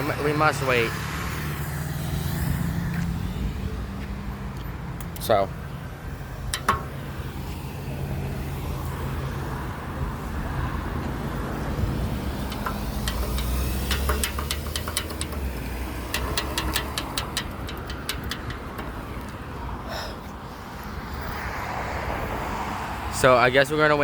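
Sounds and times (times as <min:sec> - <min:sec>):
vehicle engines passing: 0:00.0 - 0:24.0
sharp clicks: 0:06.4 - 0:07.2, 0:12.1 - 0:19.4.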